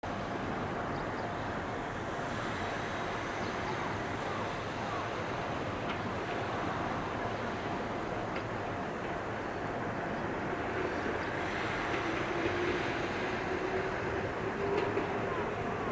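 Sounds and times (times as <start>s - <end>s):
electric train rumbling: 5.6s - 15.9s.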